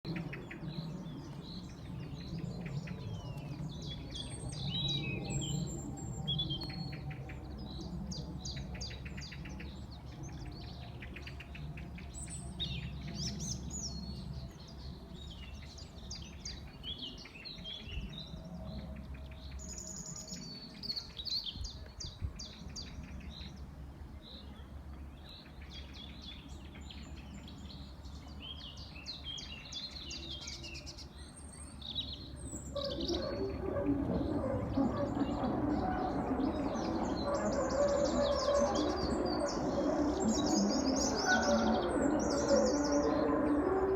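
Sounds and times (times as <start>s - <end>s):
low rumbling drone: 0.1s - 16.8s, 31.6s - 43.9s.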